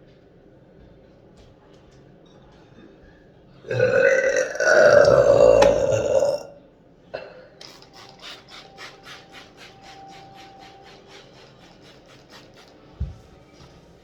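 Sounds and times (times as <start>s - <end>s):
loud burp: 3.7s - 6.6s.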